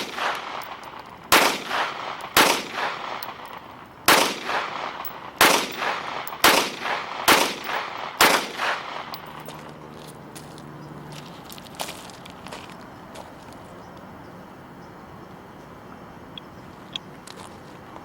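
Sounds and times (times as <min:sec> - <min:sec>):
gunshots with echo: 0:00.0 - 0:09.3.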